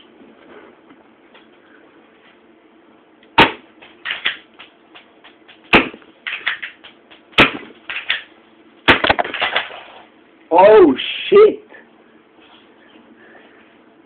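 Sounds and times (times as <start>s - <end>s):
airsoft pistol shots: 3.4s - 4.4s, 5.7s - 6.6s, 7.4s - 8.1s
rattle of small clicks and impacts: 3.8s - 8.3s, 8.9s - 10.1s.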